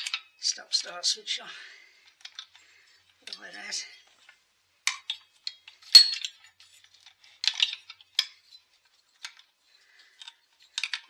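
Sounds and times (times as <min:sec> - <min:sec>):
metal parts clicking and clinking: 0:00.0 - 0:01.1, 0:02.0 - 0:11.0.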